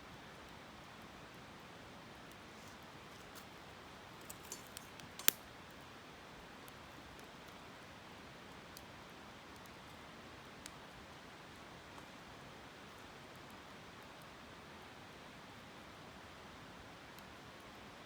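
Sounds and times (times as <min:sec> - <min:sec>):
campfire crackling and popping: 0:00.5 - 0:12.2.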